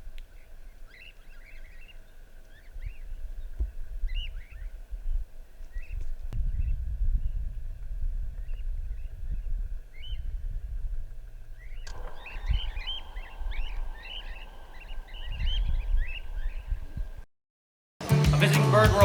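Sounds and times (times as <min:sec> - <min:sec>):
low rumble: 0:06.2 - 0:17.2
parrots chirping: 0:11.6 - 0:17.2.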